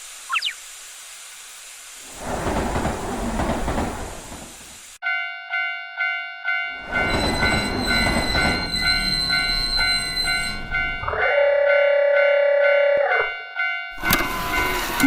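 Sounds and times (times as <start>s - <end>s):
train running noise: 2.0s - 5.0s, 6.7s - 15.0s
railway crossing bell ringing: 5.0s - 15.0s.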